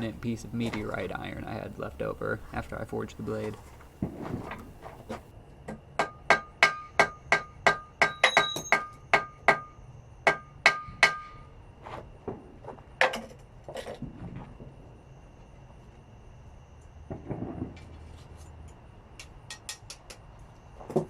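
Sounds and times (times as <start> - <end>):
hammer ringing on anvil: 6.6 - 9.7.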